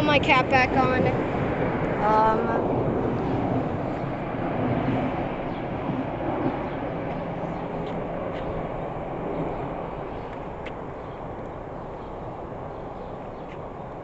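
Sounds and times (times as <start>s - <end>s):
train rumbling past: 0.0s - 14.0s.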